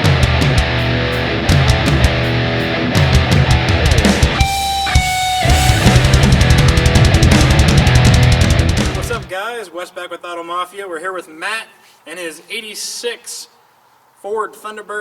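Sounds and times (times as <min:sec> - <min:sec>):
heavy rock music: 0:00.0 - 0:09.3.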